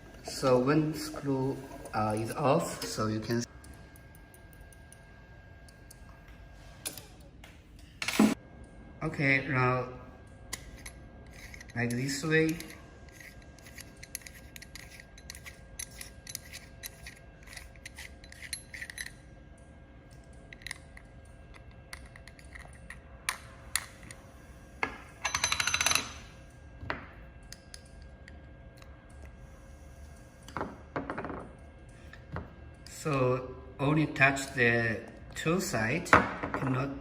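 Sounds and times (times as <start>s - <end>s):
faint steady hum: 0.0s - 37.0s
metal parts clicking and tapping: 10.5s - 19.2s, 20.5s - 24.2s, 25.2s - 26.2s.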